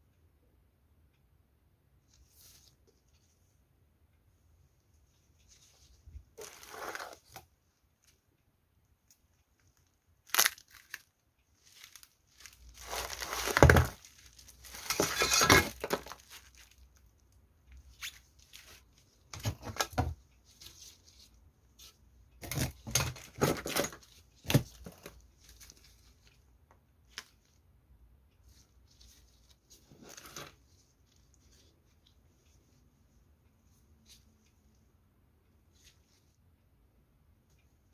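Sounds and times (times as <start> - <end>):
packaging tearing and crinkling: 10.3 - 11.1, 11.7 - 16.8.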